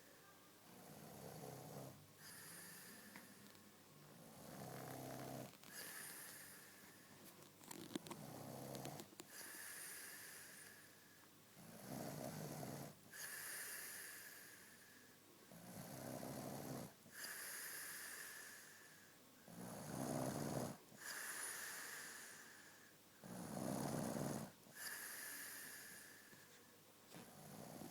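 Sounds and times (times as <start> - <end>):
man snoring: 4.2 - 5.5, 11.7 - 14.5, 15.6 - 16.9, 19.5 - 22.4, 23.2 - 26.0.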